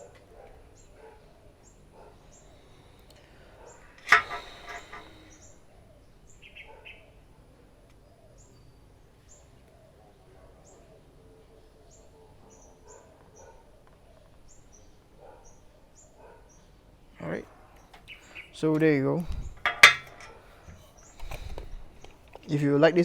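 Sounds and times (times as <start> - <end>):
sharp click: 4.0 - 5.2
brief rattle: 4.0 - 5.4, 19.2 - 20.4.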